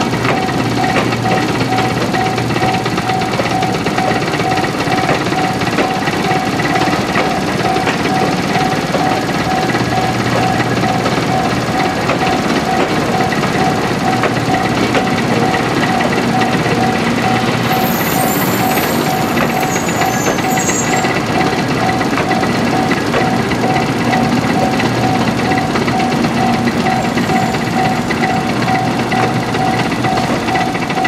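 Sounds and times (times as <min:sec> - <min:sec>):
mechanical clatter and rumble: 0:00.0 - 0:17.7, 0:21.0 - 0:31.0
level-crossing bell ringing: 0:00.0 - 0:31.0
high-pitched squeal: 0:16.8 - 0:21.3.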